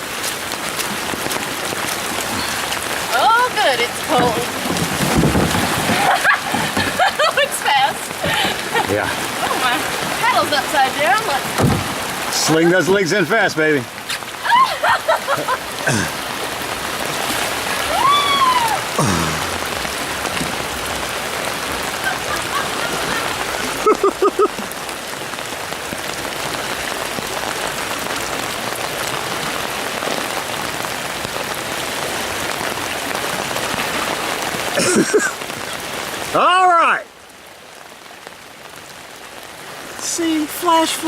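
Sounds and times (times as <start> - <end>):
floodwater rushing: 0.0 - 41.0
person whooping: 14.4 - 15.1, 17.8 - 19.6.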